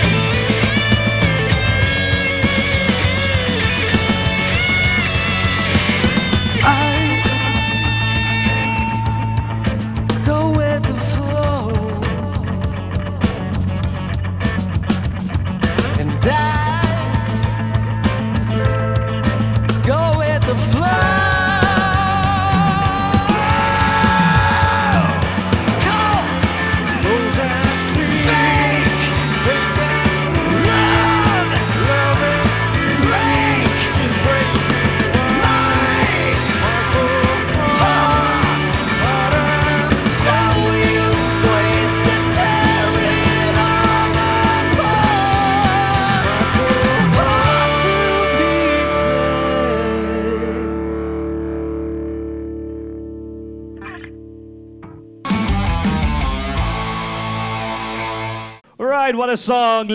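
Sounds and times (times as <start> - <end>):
rock band playing: 0.0 - 53.1, 54.8 - 58.6
bending lead guitar line: 0.0 - 58.6.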